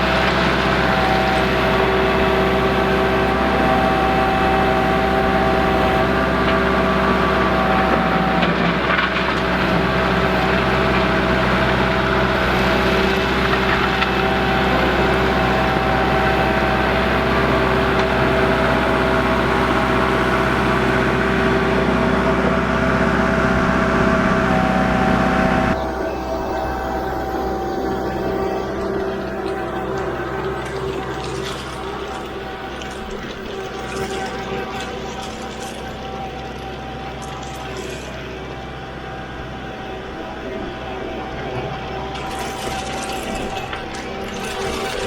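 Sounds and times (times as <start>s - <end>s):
tractor diesel engine running: 0.0s - 45.0s.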